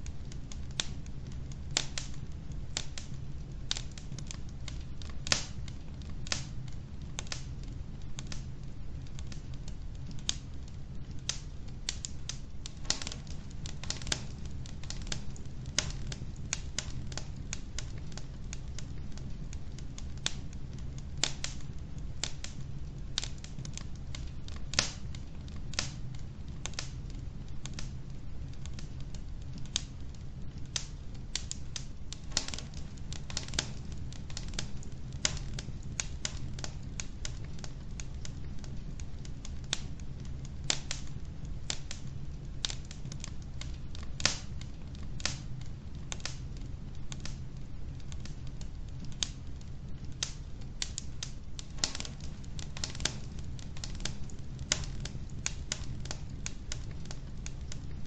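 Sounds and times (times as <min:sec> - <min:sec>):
fire crackling and popping: 0:00.0 - 0:58.0
low steady rumble: 0:00.0 - 0:58.0.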